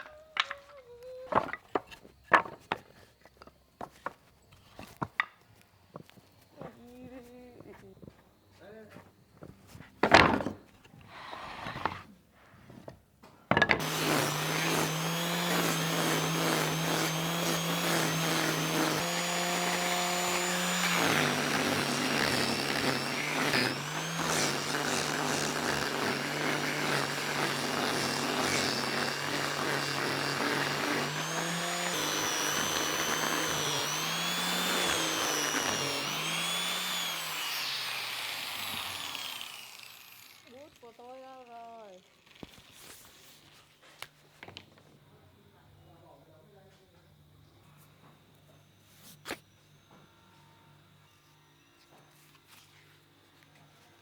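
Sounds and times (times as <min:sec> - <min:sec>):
power tool cutting wood: 0:13.6 - 0:43.5.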